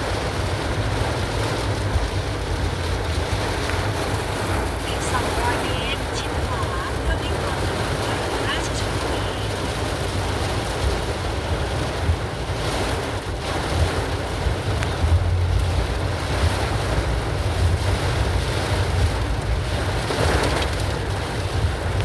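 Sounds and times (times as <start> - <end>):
wind buffeting microphone: 8.8 - 22.0.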